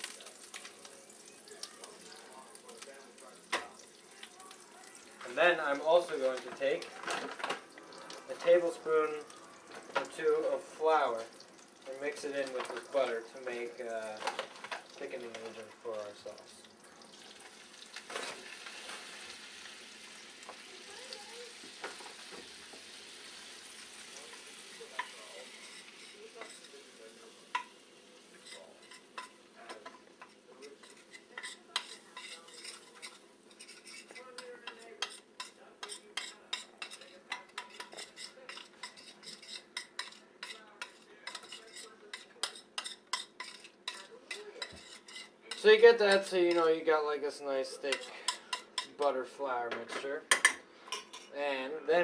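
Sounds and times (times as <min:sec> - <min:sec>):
sizzling in a pan: 0:00.0 - 0:52.0
utensil scraping a pan: 0:24.2 - 0:46.9.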